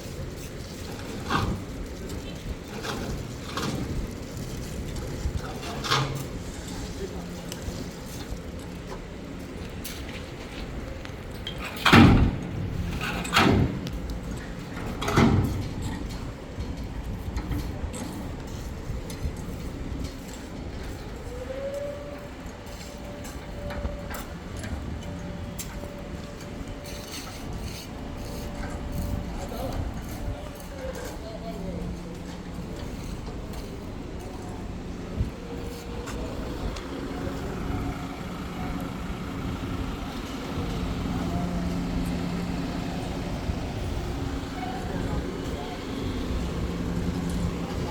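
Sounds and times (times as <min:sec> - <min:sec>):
low construction rumble: 0:00.0 - 0:47.9
engine humming: 0:31.1 - 0:47.9.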